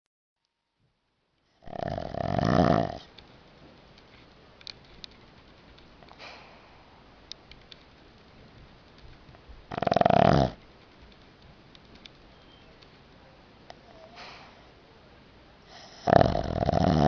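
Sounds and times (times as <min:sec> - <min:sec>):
dog snoring: 0:01.6 - 0:03.1, 0:09.7 - 0:10.6, 0:15.7 - 0:17.0
soft snuffle: 0:06.1 - 0:07.0, 0:13.8 - 0:14.8, 0:15.7 - 0:17.0
quiet dog breathing: 0:13.7 - 0:14.9, 0:15.6 - 0:17.0.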